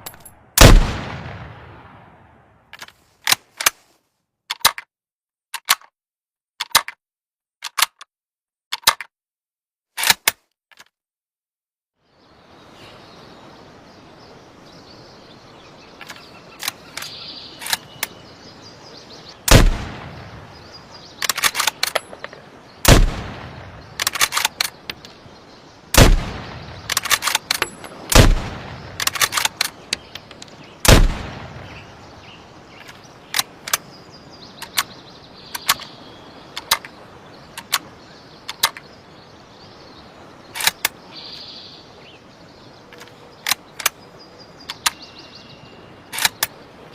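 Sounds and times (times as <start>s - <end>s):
rifle shots: 0.6s - 2.0s, 19.5s - 20.2s, 22.9s - 23.6s, 26.0s - 27.3s, 28.1s - 29.5s, 30.8s - 31.7s.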